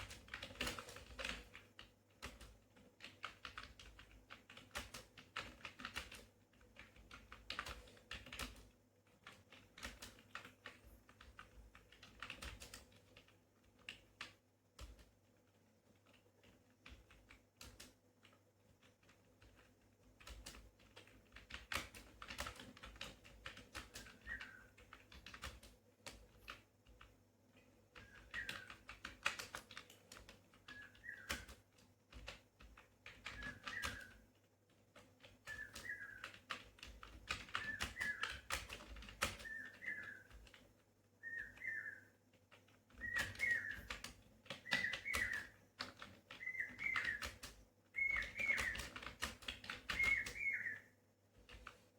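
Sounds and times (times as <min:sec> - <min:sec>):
typing on computer keyboard: 0:00.0 - 0:51.9
bird chirping: 0:23.9 - 0:24.8, 0:28.0 - 0:28.9, 0:30.6 - 0:31.6, 0:33.2 - 0:34.2, 0:35.4 - 0:36.5, 0:37.4 - 0:40.5, 0:41.2 - 0:42.2, 0:42.9 - 0:45.6, 0:46.3 - 0:49.1, 0:49.8 - 0:51.0.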